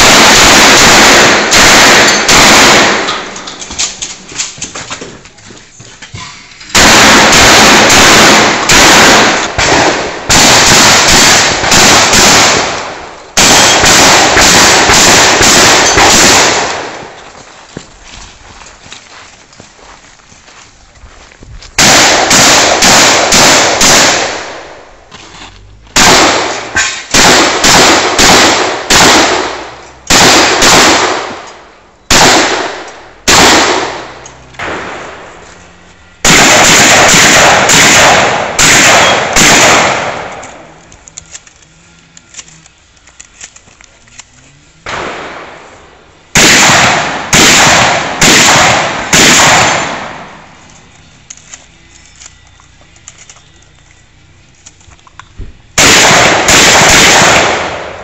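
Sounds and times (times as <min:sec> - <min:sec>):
shotgun shots: 0:00.0 - 0:04.0, 0:06.7 - 0:17.2, 0:21.8 - 0:24.9, 0:26.0 - 0:35.4, 0:36.2 - 0:40.7, 0:44.8 - 0:50.6, 0:55.6 - 0:58.0.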